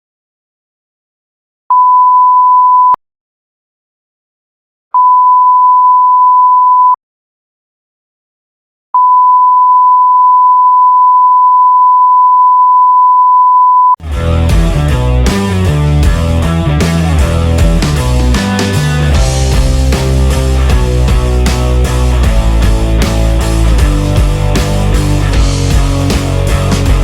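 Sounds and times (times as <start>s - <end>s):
high-pitched censor beep: 1.7s - 3.0s, 5.0s - 7.0s, 9.0s - 14.0s
loud music: 14.0s - 27.0s.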